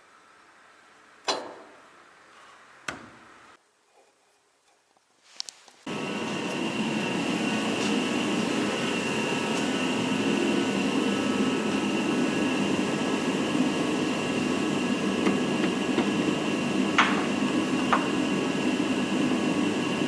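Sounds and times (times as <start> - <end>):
machine running: 5.9 - 20.0.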